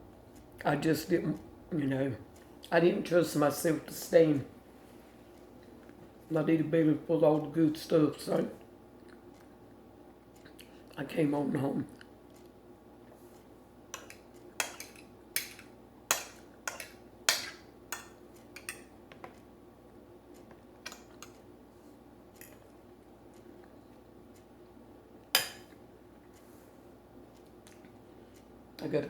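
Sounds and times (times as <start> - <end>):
cutlery clinking on a plate: 14.0 - 18.9, 25.4 - 25.8.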